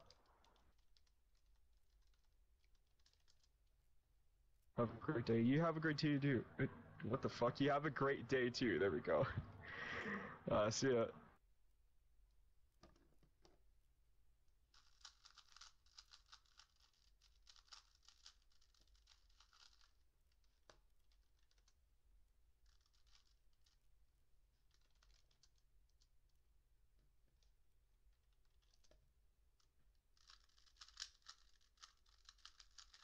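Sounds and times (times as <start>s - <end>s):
faint keyboard typing: 0.0s - 3.6s, 14.7s - 21.8s, 28.4s - 33.0s.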